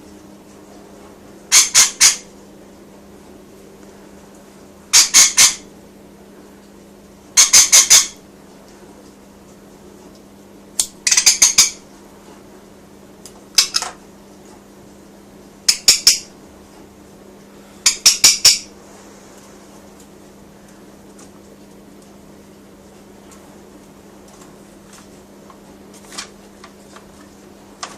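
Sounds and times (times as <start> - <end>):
parrot screeching: 1.5 - 2.3, 4.9 - 5.7, 7.4 - 8.2.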